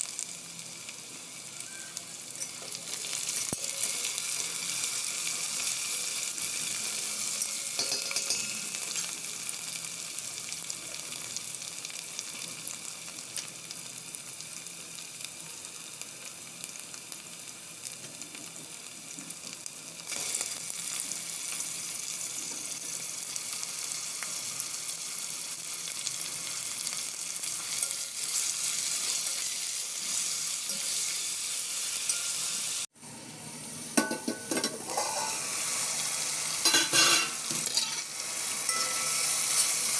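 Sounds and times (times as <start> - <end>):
food sizzling in hot oil: 0.0 - 39.9
spoon stirring and scraping pan: 34.0 - 35.4, 36.6 - 38.1.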